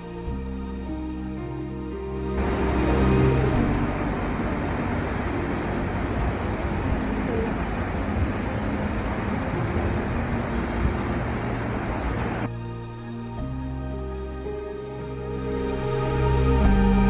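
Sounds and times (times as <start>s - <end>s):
faint music: 2.4s - 12.5s
steady rushing noise: 2.4s - 12.5s.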